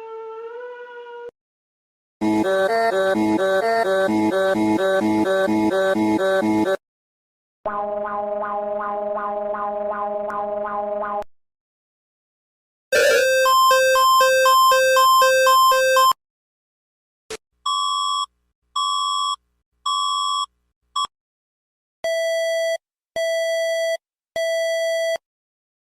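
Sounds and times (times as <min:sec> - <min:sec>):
two-tone alarm: 0:12.9 - 0:16.2.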